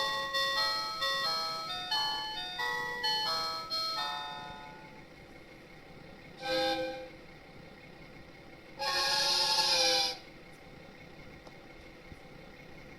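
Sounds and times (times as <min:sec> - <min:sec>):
train horn blasts: 0:06.4 - 0:07.2, 0:08.8 - 0:10.2.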